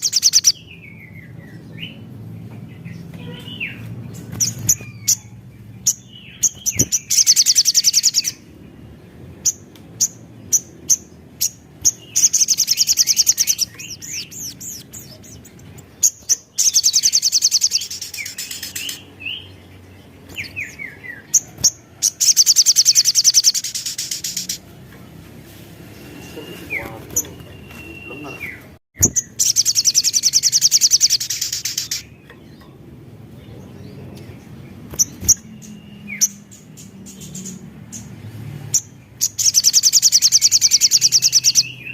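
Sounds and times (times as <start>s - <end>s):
bird sharp chips: 2.9s - 5.3s, 5.9s - 8.4s, 9.5s - 19.4s, 20.2s - 24.7s, 26.0s - 32.6s, 34.2s - 38.1s.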